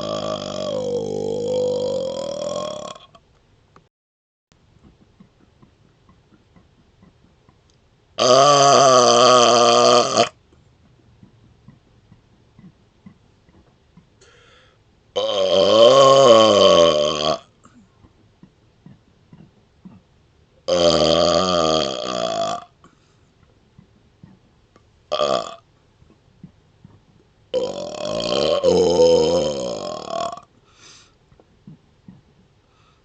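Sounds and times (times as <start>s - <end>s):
man burping: 0.0s - 3.2s, 8.2s - 10.4s, 15.2s - 17.8s, 20.7s - 22.8s, 25.1s - 25.6s, 27.5s - 30.5s.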